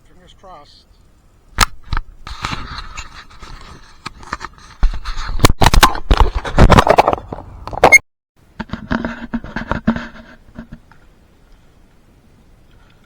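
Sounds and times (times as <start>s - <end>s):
muffled water noise: 5.8s - 13.0s.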